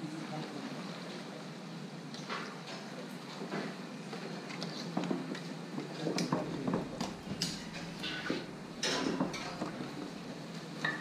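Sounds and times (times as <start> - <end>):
kitchen utensils clicking: 6.8 - 9.8.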